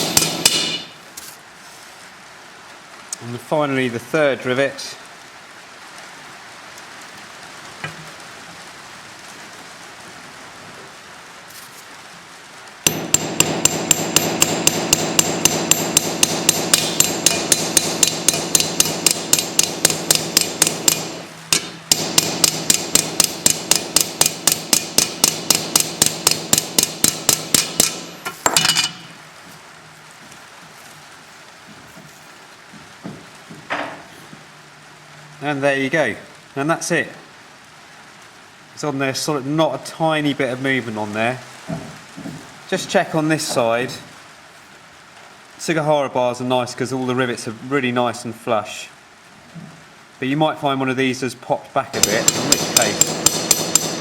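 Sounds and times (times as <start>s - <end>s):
small hammer tapping metal rivet: 12.9s - 29.0s, 52.0s - 54.0s.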